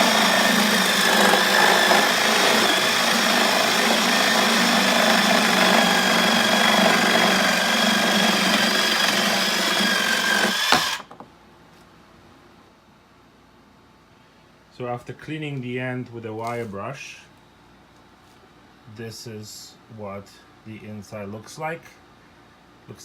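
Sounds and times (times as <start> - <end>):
power tool grinding plastic: 0.0 - 11.1
power tool whine: 0.0 - 11.1.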